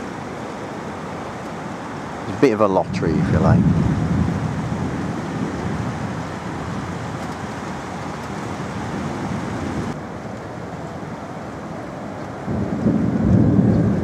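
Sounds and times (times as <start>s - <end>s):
rainstorm rushing: 0.0s - 14.0s.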